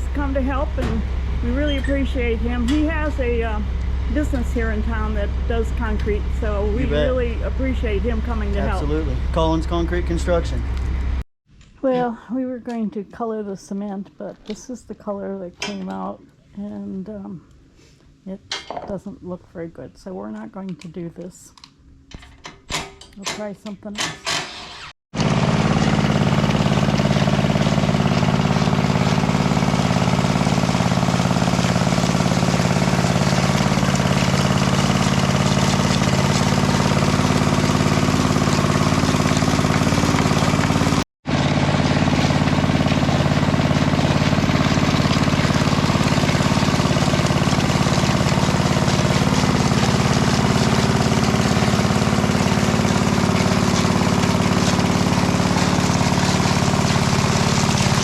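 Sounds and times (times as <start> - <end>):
small gasoline engine running: 0.0 - 10.6, 24.5 - 58.0.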